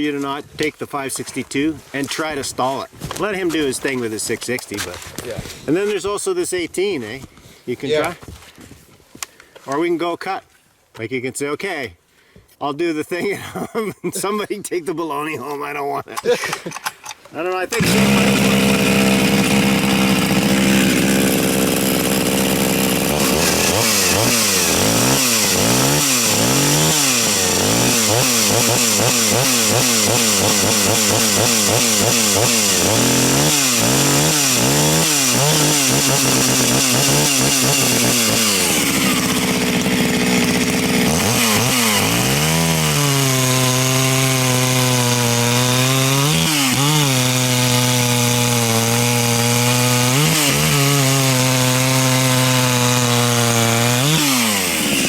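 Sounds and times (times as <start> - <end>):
chainsaw cutting through log: 17.7 - 55.0.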